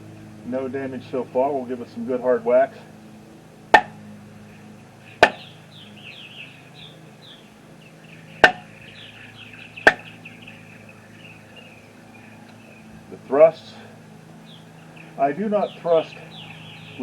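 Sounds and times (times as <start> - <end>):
faint birds chirping: 2.7 - 17.0
knife blade whacking into wood: 3.8 - 4.0, 5.2 - 5.4, 8.4 - 8.7, 9.9 - 10.1.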